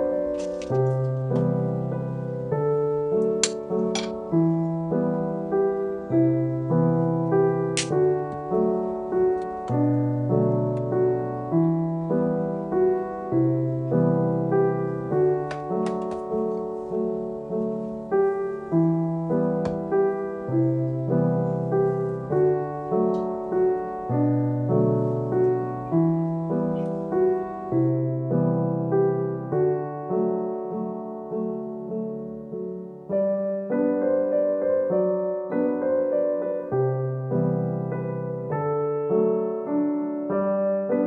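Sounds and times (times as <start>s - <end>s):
gentle solo piano music: 0.0s - 41.0s.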